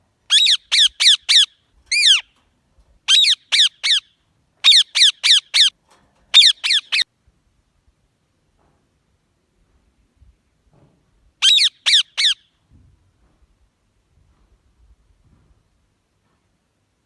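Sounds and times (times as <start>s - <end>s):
parrot squawking: 0.3s - 2.3s, 3.1s - 5.8s, 6.4s - 7.1s, 11.4s - 12.4s.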